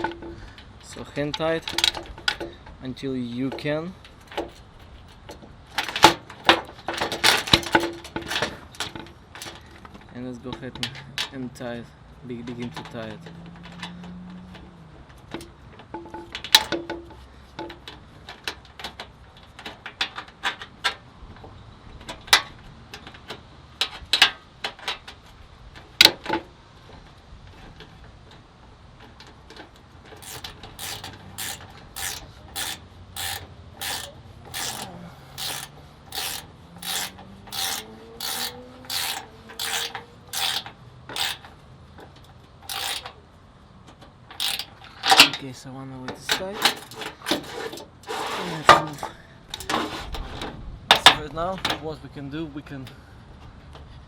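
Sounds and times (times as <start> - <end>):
ratchet wrench clicking: 5.8 - 9.6, 30.1 - 41.6, 42.2 - 43.2, 44.3 - 45.4, 46.3 - 47.4.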